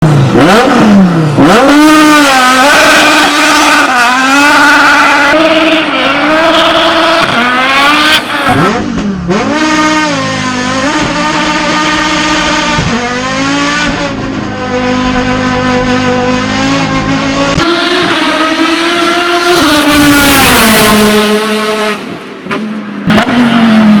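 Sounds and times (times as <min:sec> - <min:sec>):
race car engine revving: 0:00.0 - 0:24.0.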